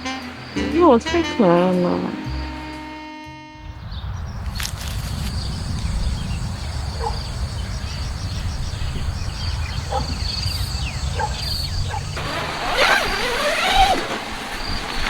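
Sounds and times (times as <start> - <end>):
night insects chirping: 0.0 - 2.8, 3.8 - 15.0
low rumble: 3.5 - 12.1.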